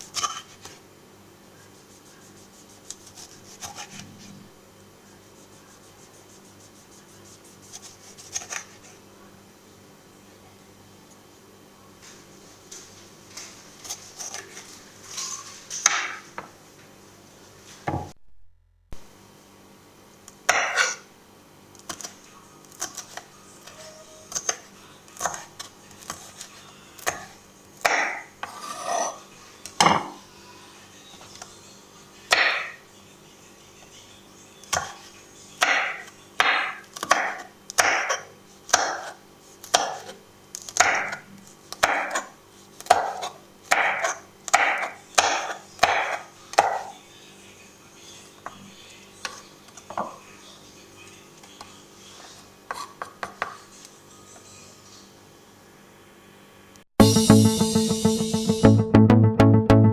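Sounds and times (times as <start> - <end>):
knife chopping on wooden board: 27.0 - 28.6, 35.6 - 40.1, 40.8 - 46.9.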